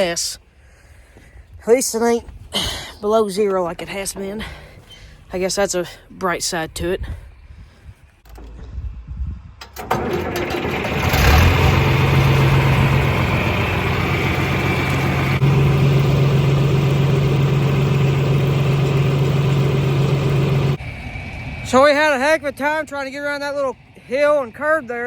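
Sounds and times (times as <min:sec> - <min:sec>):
tractor engine droning: 0:09.6 - 0:25.0.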